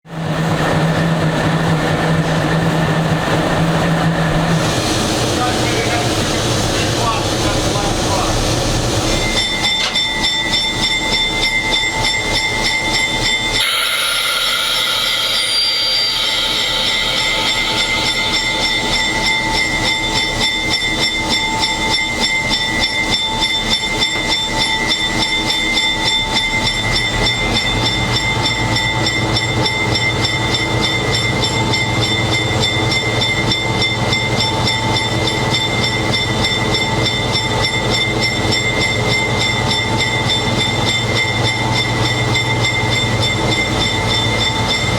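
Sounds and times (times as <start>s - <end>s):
diesel locomotive engine whining: 0.1s - 44.9s
air brakes hissing: 13.6s - 19.6s.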